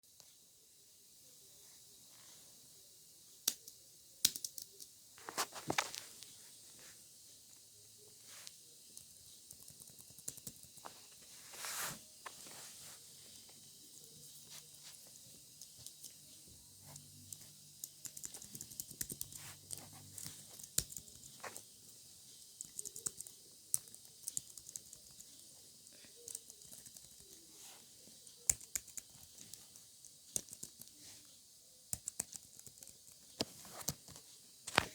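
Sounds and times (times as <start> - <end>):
typing on computer keyboard: 17.8 - 19.4, 22.6 - 25.2, 26.2 - 27.4, 28.5 - 29.5, 30.3 - 30.9, 31.9 - 33.1.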